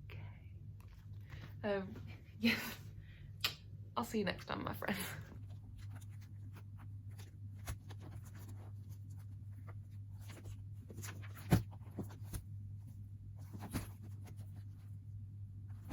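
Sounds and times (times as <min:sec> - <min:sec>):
steady low hum: 0:00.0 - 0:15.9.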